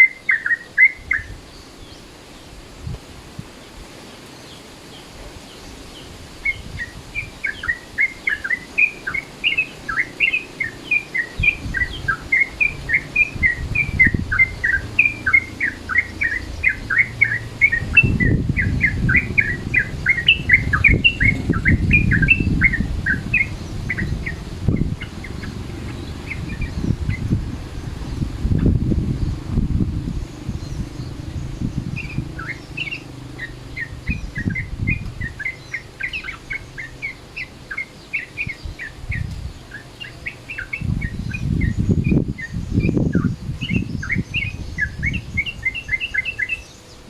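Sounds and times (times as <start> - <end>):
bulbul chirping song: 0.0 - 2.0, 6.0 - 47.0
low rumbling noise: 9.0 - 37.8.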